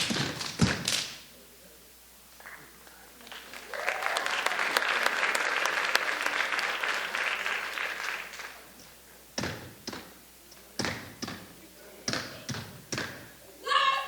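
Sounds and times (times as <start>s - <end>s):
audience applauding: 3.2s - 8.8s.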